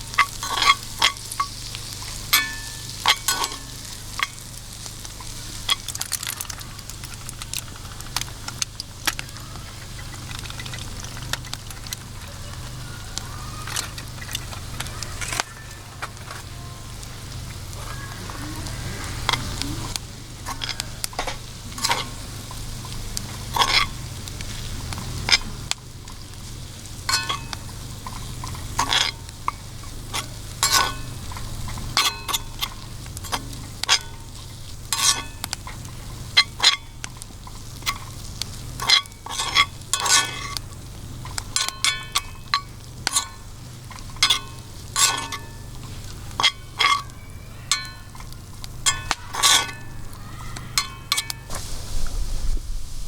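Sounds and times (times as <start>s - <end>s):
food sizzling in a pan: 0.0s - 53.0s.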